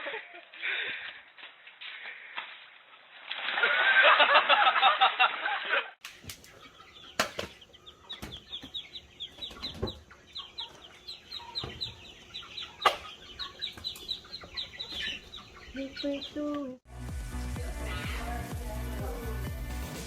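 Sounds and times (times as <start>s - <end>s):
young fowl peeping: 6.1s - 16.8s.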